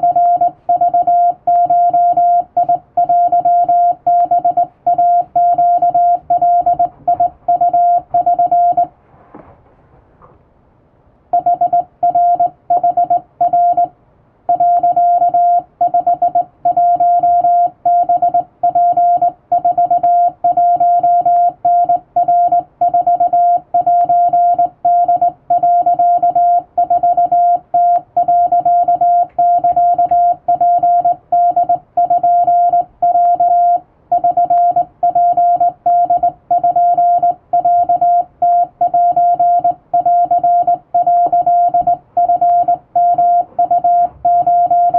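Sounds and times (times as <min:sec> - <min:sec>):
morse code beeps: 0:00.0 - 0:08.9, 0:11.3 - 0:13.9, 0:14.5 - 0:44.9.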